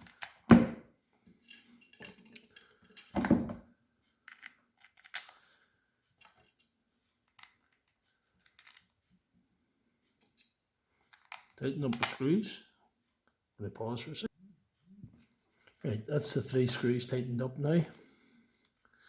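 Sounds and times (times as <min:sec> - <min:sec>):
faint clicks and small rattles: 0:01.2 - 0:03.2, 0:04.0 - 0:12.3.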